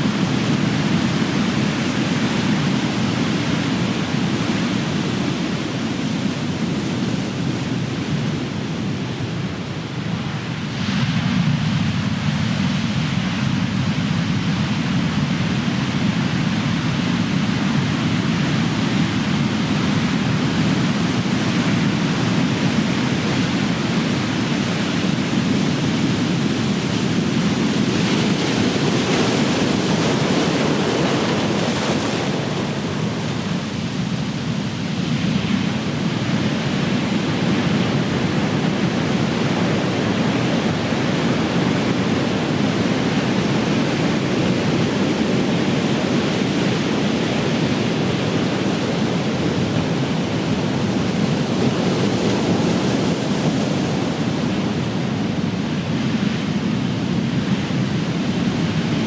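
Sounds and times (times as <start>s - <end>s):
ocean waves breaking: 17.8s - 59.0s.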